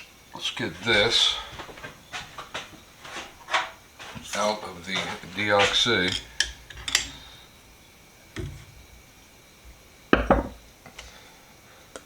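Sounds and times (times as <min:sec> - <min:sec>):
workshop objects knocking: 0:10.2 - 0:10.6.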